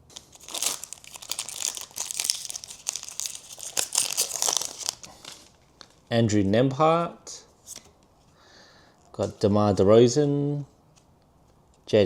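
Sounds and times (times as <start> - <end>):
foil wrapper crinkling and tearing: 0.0 - 5.6.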